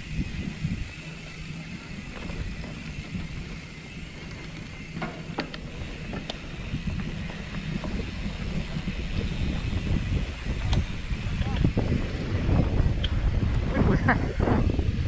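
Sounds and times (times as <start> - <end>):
wind on microphone: 0.0 - 4.9, 5.6 - 15.0
tyres rumbling on trail: 0.0 - 15.0
sharp clicks and rattles: 2.0 - 11.8.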